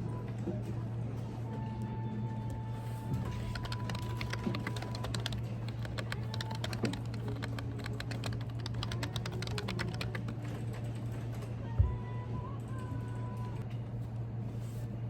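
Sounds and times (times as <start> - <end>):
keyboard keystroke clicks: 3.4 - 10.5.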